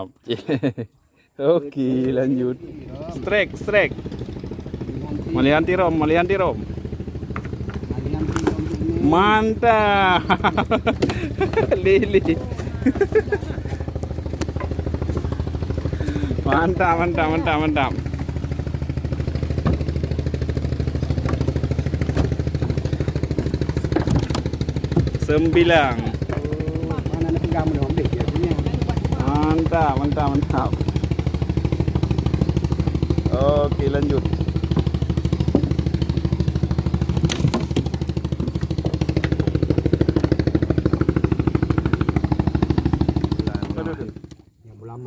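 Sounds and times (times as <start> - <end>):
boat engine idling: 1.8 - 45.0
sharp knocks: 19.4 - 20.1, 21.1 - 26.4, 34.6 - 36.1, 37.1 - 40.6.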